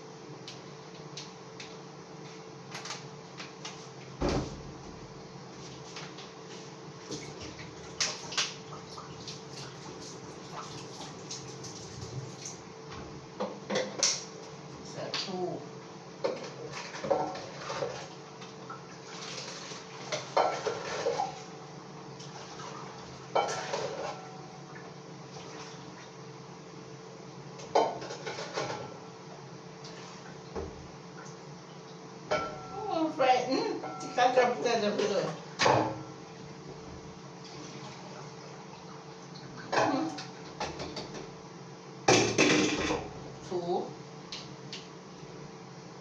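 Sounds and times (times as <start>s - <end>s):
dishes and utensils clattering: 20.2s - 21.3s, 23.4s - 24.3s, 42.1s - 43.1s.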